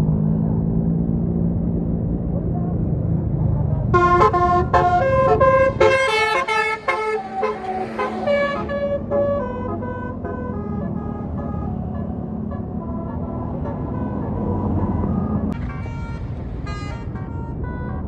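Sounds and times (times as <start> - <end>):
low engine rumble: 0.0 - 18.0
musical bus horn playing tune: 3.9 - 18.0.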